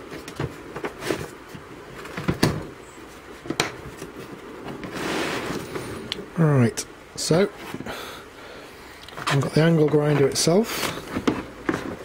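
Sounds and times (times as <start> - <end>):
rustle: 0.0 - 12.0
plastic case clacks and knocks: 2.1 - 2.7, 9.2 - 12.0.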